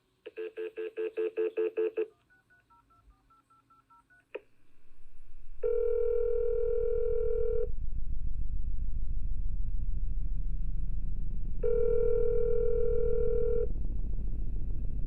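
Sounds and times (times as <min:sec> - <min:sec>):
keypad dialing beeps: 0:00.3 - 0:04.2
rapid pulsing phone tone: 0:00.3 - 0:04.3, 0:05.6 - 0:07.7, 0:11.6 - 0:13.7
ringback tone: 0:05.6 - 0:07.7, 0:11.6 - 0:13.7
rising line noise: 0:07.6 - 0:15.0.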